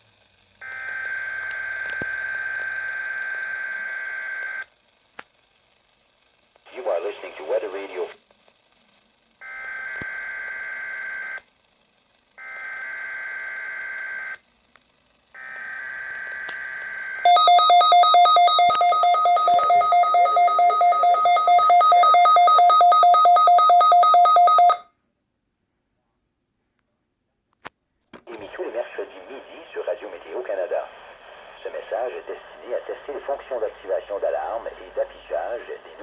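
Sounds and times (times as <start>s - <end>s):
rapidly pulsing alert tone: 17.3s - 24.8s.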